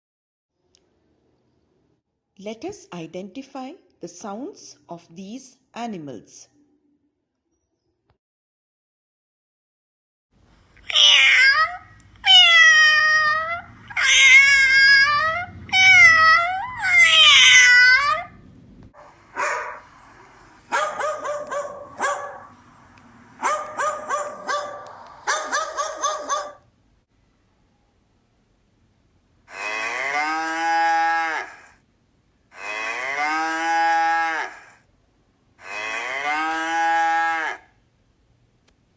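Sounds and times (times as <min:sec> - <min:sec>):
cat meowing: 0:10.9 - 0:18.4
dog barking: 0:19.0 - 0:19.9, 0:20.7 - 0:22.5, 0:23.4 - 0:26.7.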